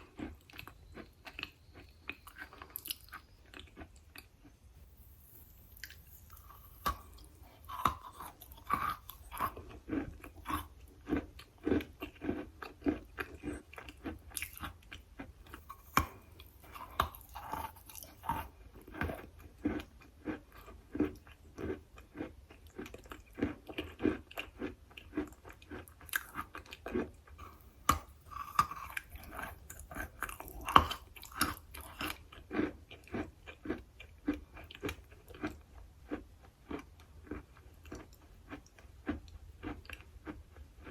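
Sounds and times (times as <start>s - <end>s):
person chewing hard chalky material: 0.0s - 40.9s
sharp cracks of biting: 27.4s - 32.2s.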